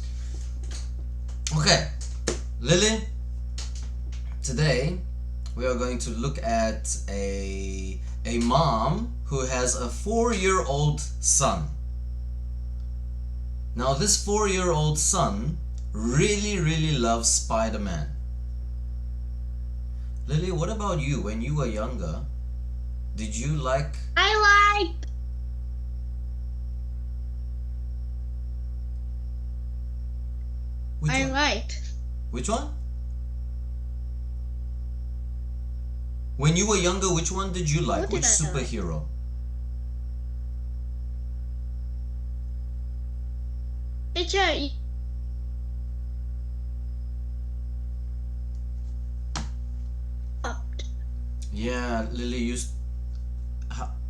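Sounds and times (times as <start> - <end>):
faint high whine: 0.0 - 54.0
low mains hum: 0.0 - 54.0.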